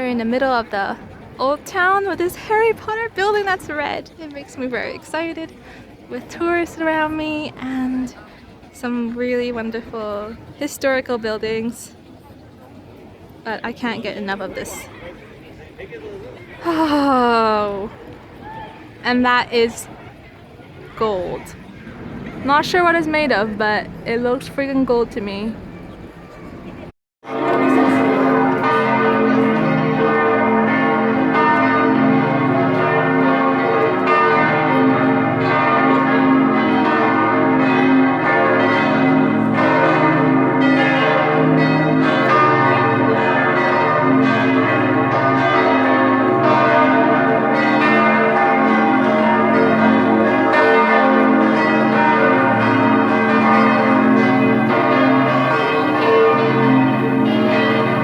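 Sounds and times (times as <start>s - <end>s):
church bells pealing: 21.0s - 58.0s.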